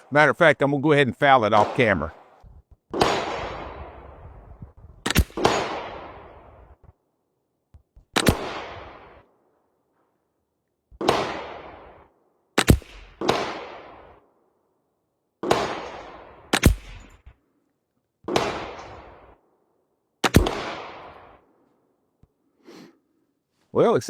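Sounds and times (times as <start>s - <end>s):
rifle shots: 1.3s - 6.8s, 8.1s - 9.3s, 11.0s - 14.3s, 15.4s - 17.4s, 18.3s - 19.4s, 20.2s - 21.5s.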